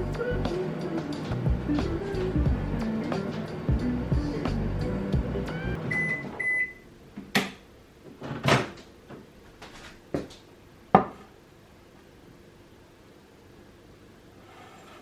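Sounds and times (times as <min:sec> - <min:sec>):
microwave oven humming: 0:00.0 - 0:07.0
microwave beeping: 0:05.5 - 0:06.9.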